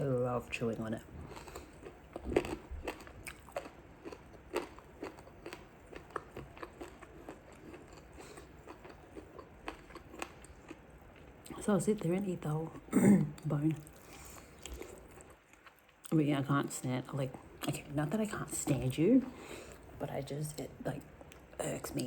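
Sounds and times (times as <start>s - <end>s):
chewing and crunching bone: 1.0s - 11.5s, 13.8s - 16.1s.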